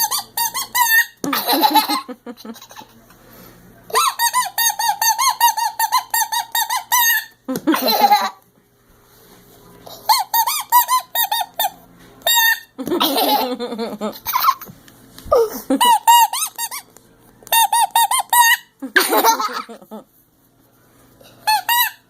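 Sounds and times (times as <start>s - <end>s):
toy horn squeaking: 21.4s - 22.0s.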